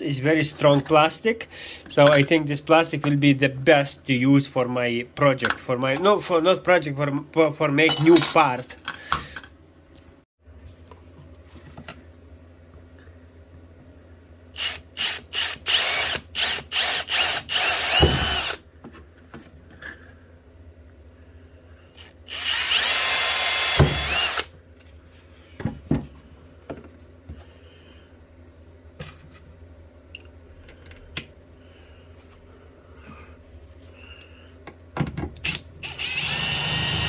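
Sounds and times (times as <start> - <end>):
oscillating multi-tool whining: 14.6 - 18.6, 22.0 - 24.5, 35.8 - 37.0.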